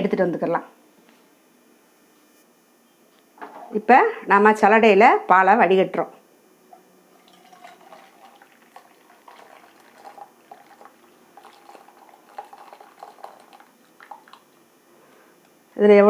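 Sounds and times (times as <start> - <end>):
liquid trickling through a sieve: 7.1 - 14.5.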